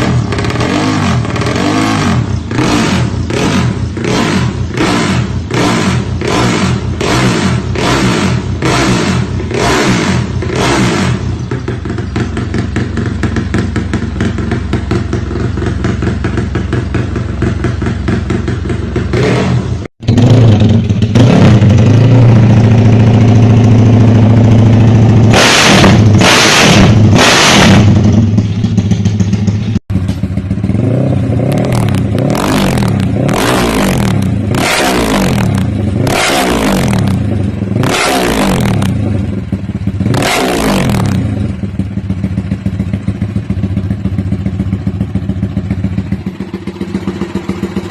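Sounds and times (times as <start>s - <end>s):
engine revving in throttle blips: 0.0s - 13.6s, 19.0s - 28.4s, 30.0s - 41.9s
motorcycle engine idling: 0.0s - 25.3s, 27.8s - 33.4s, 35.4s - 36.1s, 38.8s - 40.1s, 41.1s - 47.9s.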